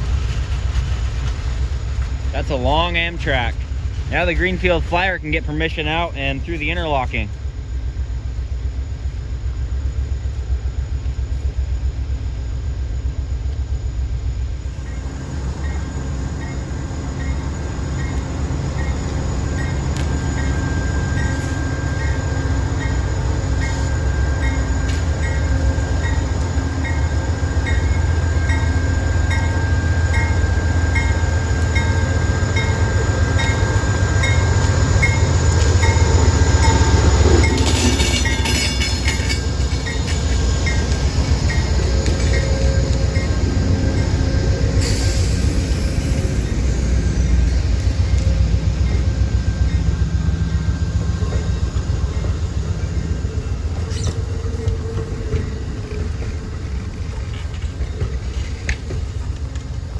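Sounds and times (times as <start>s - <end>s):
diesel locomotives rumbling: 0.0s - 59.9s
bell ringing steadily: 15.7s - 53.7s.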